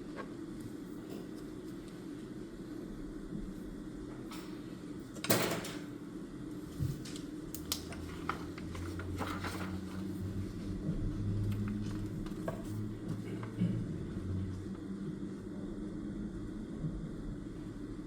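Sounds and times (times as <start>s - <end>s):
steady low hum: 0.0s - 18.0s
paper rustle: 7.9s - 10.2s.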